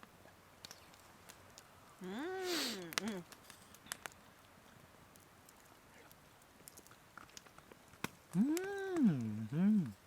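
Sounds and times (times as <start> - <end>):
faint background hiss: 0.0 - 10.0
faint small clicks: 2.8 - 4.2.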